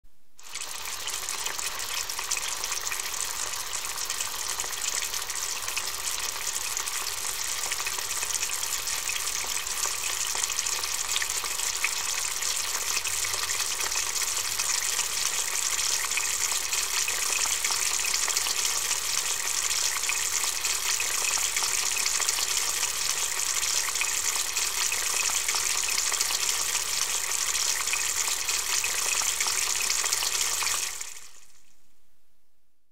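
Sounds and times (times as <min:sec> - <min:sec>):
hot oil sizzling in a frying pan: 0:00.4 - 0:31.5.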